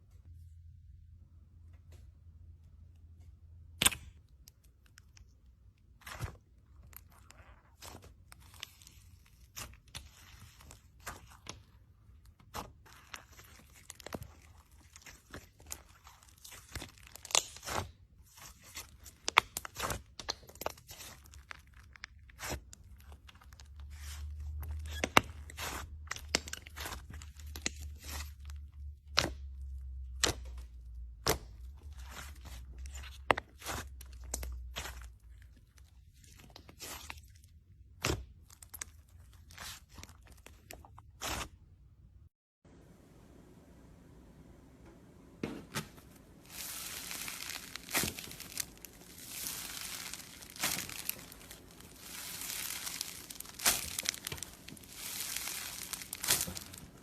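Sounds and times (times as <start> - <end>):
slime crackling and popping: 6.0 - 37.2, 46.4 - 57.0.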